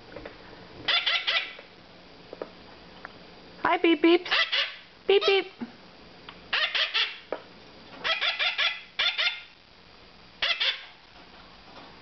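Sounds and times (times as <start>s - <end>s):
parakeet chicks squawking: 0.9s - 1.6s, 4.2s - 5.5s, 6.5s - 7.3s, 8.0s - 9.6s, 10.4s - 11.0s.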